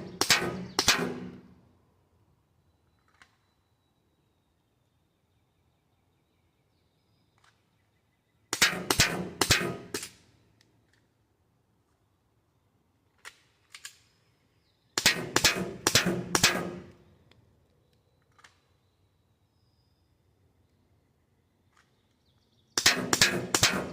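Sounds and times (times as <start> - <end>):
pistol shots: 0.0 - 1.5, 8.6 - 10.1, 15.0 - 17.0, 22.8 - 23.9.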